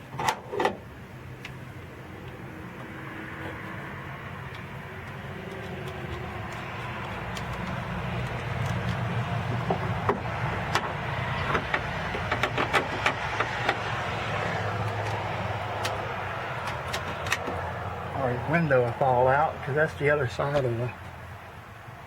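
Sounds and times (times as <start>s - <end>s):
passing car hum: 0.8s - 22.0s
clicks and taps of door parts: 4.5s - 13.9s.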